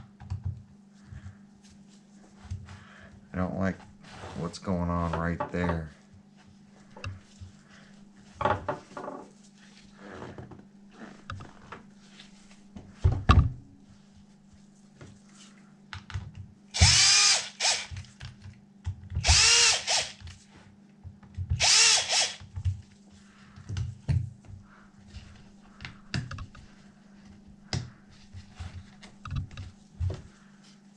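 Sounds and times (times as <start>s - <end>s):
power drill whine: 16.8s - 18.0s, 19.2s - 20.2s, 21.6s - 22.4s.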